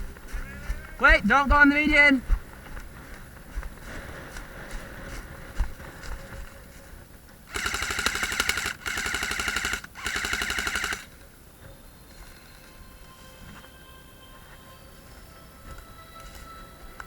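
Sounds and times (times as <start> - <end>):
airsoft gun automatic fire: 7.5 - 11.1.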